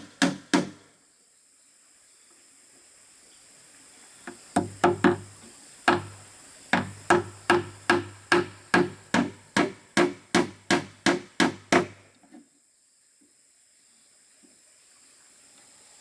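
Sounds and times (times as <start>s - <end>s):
hammer striking wood: 0.0s - 0.8s, 4.6s - 5.3s, 5.9s - 12.0s.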